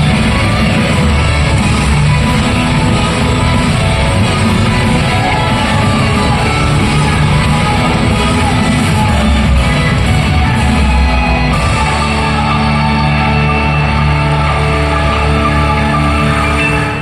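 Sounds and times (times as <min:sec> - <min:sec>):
loud rock music: 0:00.0 - 0:17.0.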